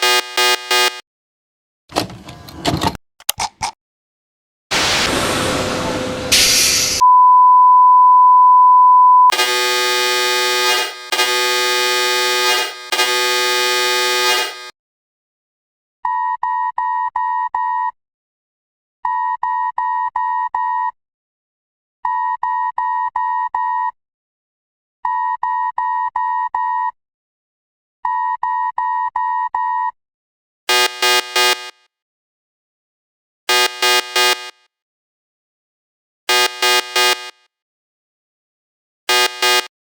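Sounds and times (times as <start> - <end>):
harsh horn-like blasts: 0.0 - 1.0, 9.3 - 14.7, 39.1 - 39.7
rapid beeps: 0.0 - 1.0, 9.2 - 14.7, 30.7 - 31.7, 33.5 - 34.5, 36.3 - 37.4, 39.1 - 39.7
steady beep tone: 0.0 - 1.0, 7.0 - 14.7, 30.7 - 31.7, 33.5 - 34.5, 36.3 - 37.3, 39.1 - 39.7
short burst of noise: 4.7 - 7.0.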